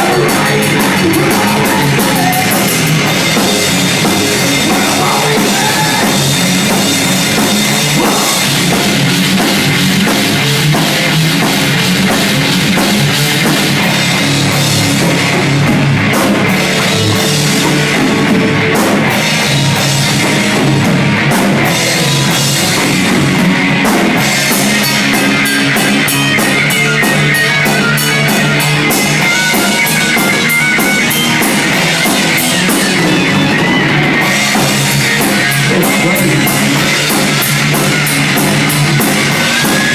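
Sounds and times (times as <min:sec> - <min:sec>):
distorted electric guitars: 0:00.0 - 0:39.9
fast driving drums: 0:00.0 - 0:39.9.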